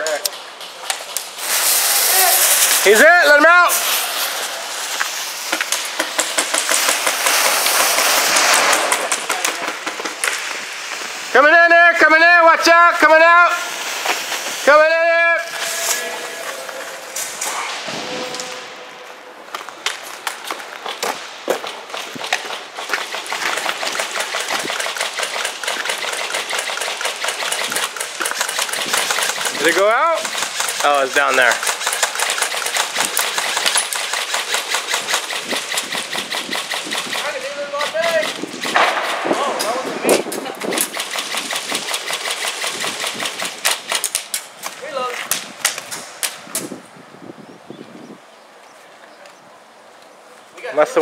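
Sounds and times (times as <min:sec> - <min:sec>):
steady hiss: 0:00.7 - 0:21.9
airsoft guns firing: 0:02.1 - 0:10.7, 0:20.8 - 0:44.7.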